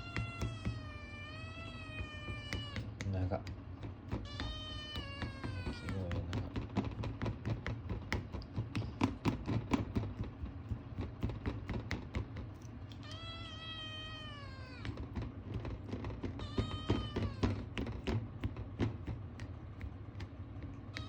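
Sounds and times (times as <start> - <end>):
kitten meowing: 0.0 - 3.1, 4.1 - 6.5, 12.9 - 15.1, 16.2 - 17.8
light taps and clicks: 1.8 - 13.3, 14.4 - 21.0.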